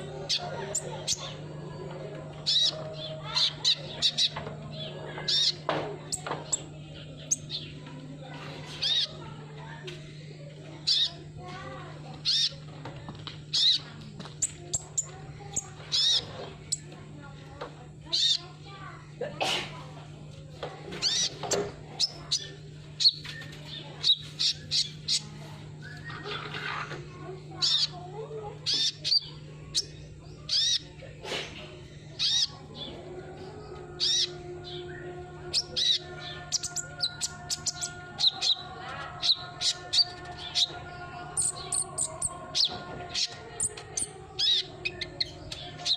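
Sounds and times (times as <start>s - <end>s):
bird chirping: 0.0s - 7.9s, 8.7s - 9.3s, 13.5s - 16.9s, 21.0s - 27.0s, 27.6s - 28.0s
steady low hum: 0.0s - 45.9s.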